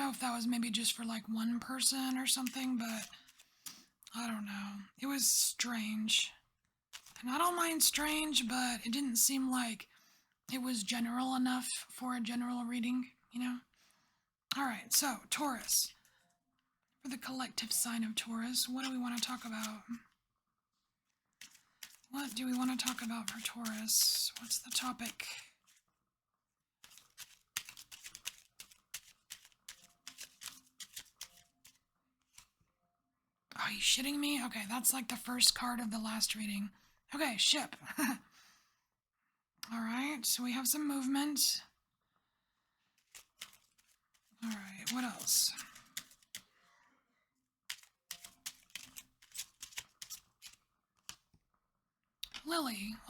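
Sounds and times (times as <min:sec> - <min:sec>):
cards being shuffled: 0:01.8 - 0:03.9, 0:06.9 - 0:08.5, 0:14.9 - 0:16.0, 0:17.1 - 0:20.0, 0:21.4 - 0:25.8, 0:26.8 - 0:32.6, 0:43.0 - 0:46.5, 0:47.7 - 0:51.3.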